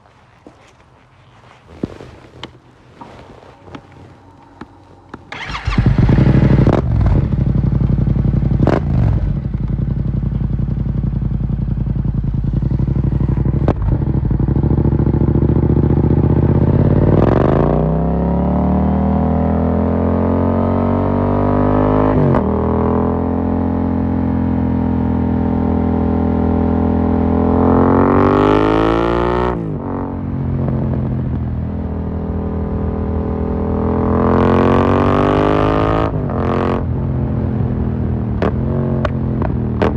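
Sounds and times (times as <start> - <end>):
exhaust cracks: 1.4 - 7.8
motorcycle engine revving: 3.0 - 39.9.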